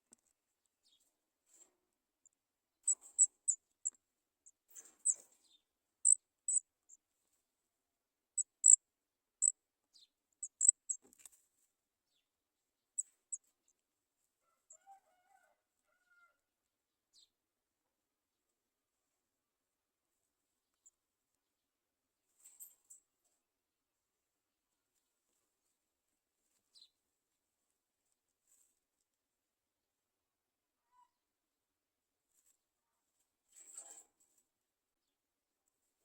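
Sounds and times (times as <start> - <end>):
nestlings cheeping high-pitched: 8.4 - 8.8, 10.4 - 10.9.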